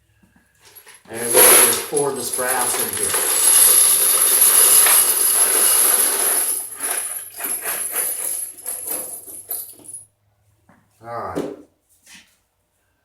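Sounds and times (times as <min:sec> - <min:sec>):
metal cartridge cases clattering: 0:00.6 - 0:09.9.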